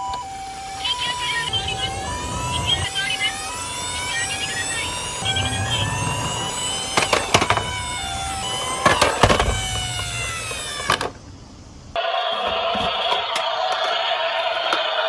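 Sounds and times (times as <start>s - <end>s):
toy two-tone siren: 0.0s - 11.2s, 11.9s - 15.0s
rising whine: 0.0s - 12.0s
plastic toy cars clattering: 4.8s - 11.2s, 12.0s - 15.0s.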